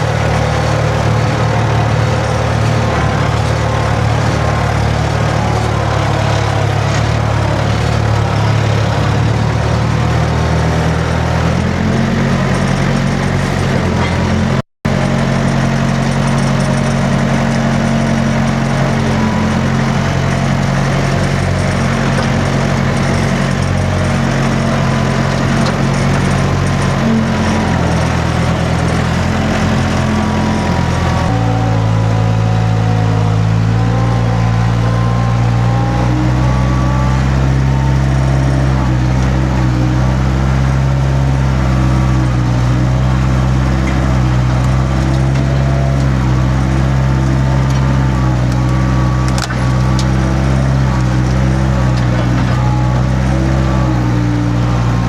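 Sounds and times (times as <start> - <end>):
vehicle engine running: 0.0 - 55.0.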